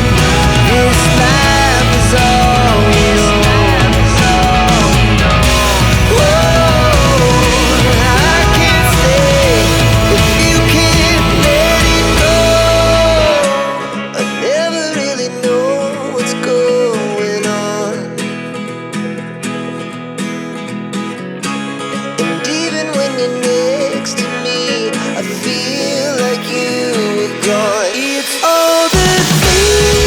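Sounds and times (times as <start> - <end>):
heavy bass: 0.0 - 13.7, 29.0 - 30.0
song with guitar: 0.0 - 30.0.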